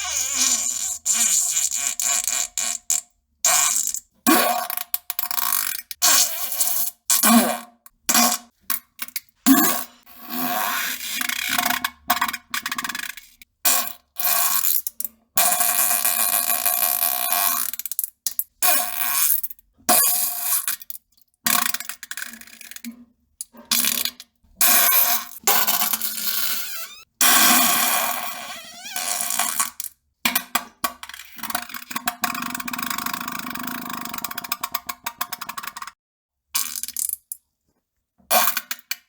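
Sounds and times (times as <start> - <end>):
fart sounds: 0.0 - 4.7, 24.7 - 29.7.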